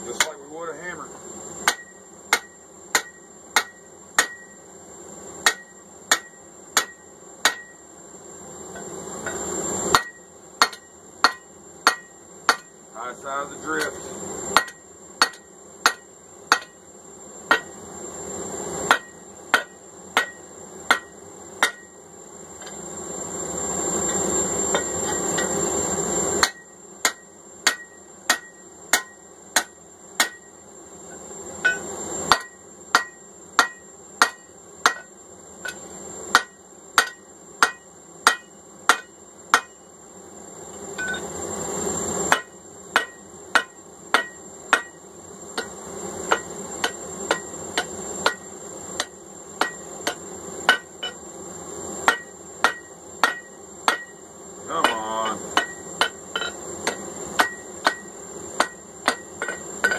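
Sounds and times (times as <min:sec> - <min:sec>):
hammer ringing on steel: 0:01.7 - 0:04.6, 0:05.5 - 0:07.8, 0:09.9 - 0:12.7, 0:31.6 - 0:35.1, 0:42.3 - 0:45.0, 0:52.1 - 0:54.2, 0:54.8 - 0:59.9.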